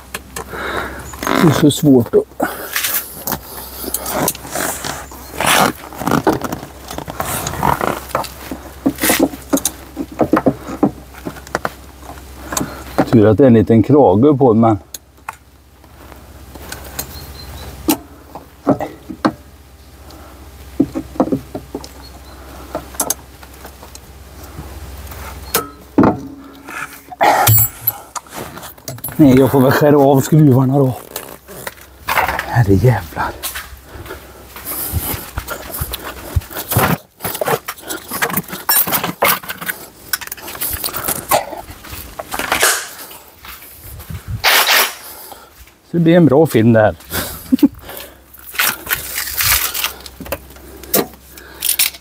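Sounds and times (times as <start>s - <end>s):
steady low hum: 0.0s - 52.0s
hand tools clinking: 25.4s - 29.6s.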